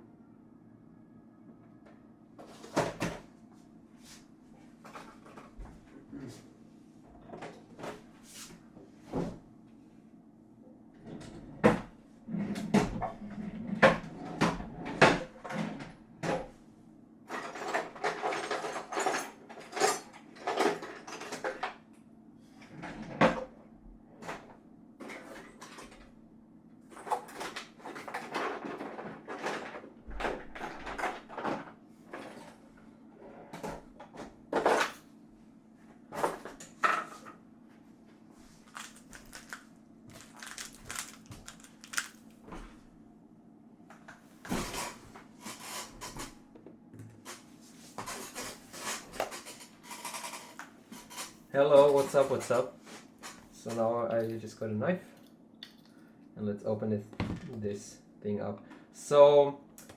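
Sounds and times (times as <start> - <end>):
clattering and rustling: 27.0 - 32.6, 38.6 - 42.7, 47.2 - 52.6.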